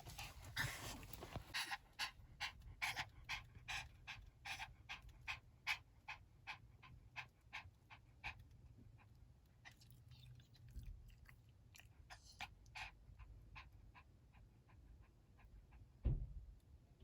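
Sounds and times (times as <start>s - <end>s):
dog panting rapidly: 0.0s - 9.8s, 12.1s - 16.0s.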